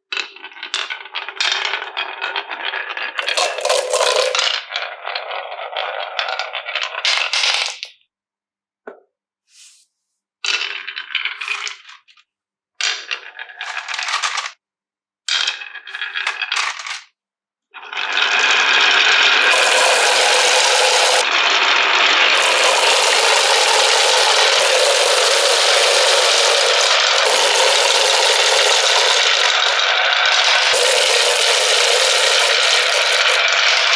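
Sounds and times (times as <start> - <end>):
marbles rattling down wooden run: 1.0 - 7.9, 17.9 - 33.9.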